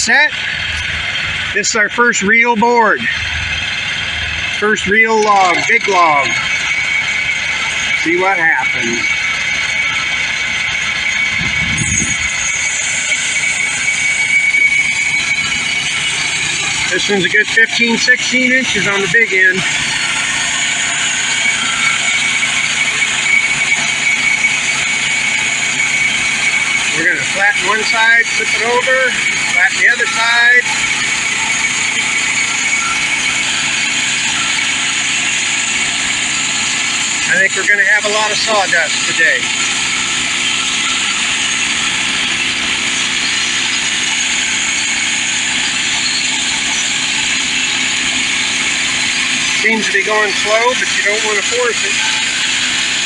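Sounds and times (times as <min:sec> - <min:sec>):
band blade whining through log: 0:00.0 - 0:53.0
gas engine running: 0:00.0 - 0:53.0.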